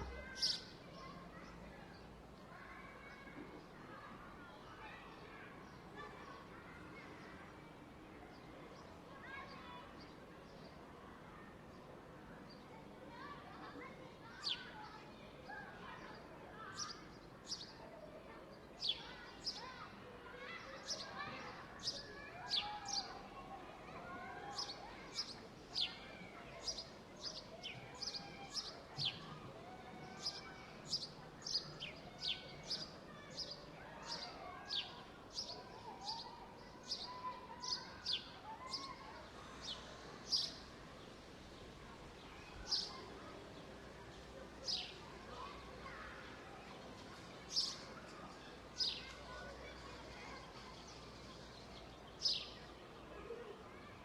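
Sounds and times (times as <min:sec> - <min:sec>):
small birds chirping: 0:00.0 - 0:01.6, 0:30.0 - 0:41.2.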